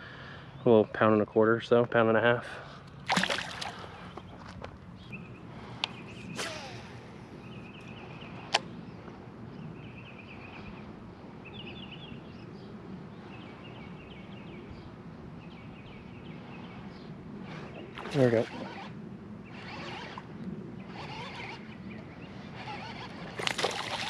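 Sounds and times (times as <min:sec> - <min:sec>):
fishing rod swishing: 0:22.8 - 0:24.0.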